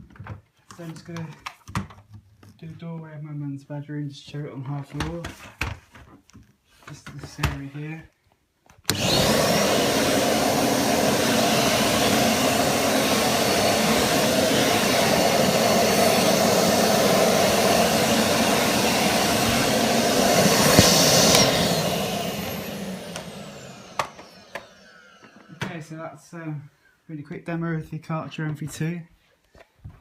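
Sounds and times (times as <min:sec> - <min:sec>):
motor winding down whine: 0:08.9 - 0:25.7
vacuum cleaner running: 0:08.9 - 0:26.1.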